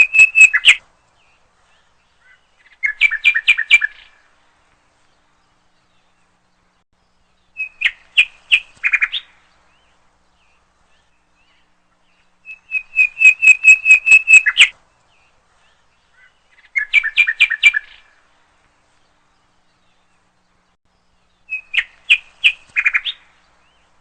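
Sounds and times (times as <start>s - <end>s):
bird chirping rapidly: 0.0s - 0.8s, 2.2s - 4.2s, 7.2s - 14.7s, 16.1s - 18.1s, 20.2s - 24.0s.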